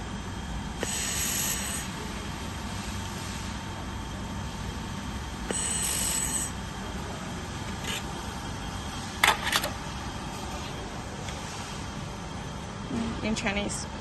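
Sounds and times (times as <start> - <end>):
laser welding machine hum: 0.0 - 14.0
high hiss: 0.8 - 2.0.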